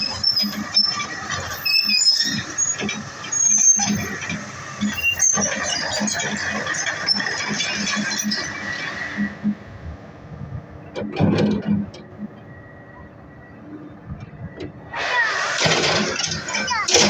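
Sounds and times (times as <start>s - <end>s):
metallic squeals: 0.0s - 9.5s
excavator running: 0.0s - 17.0s.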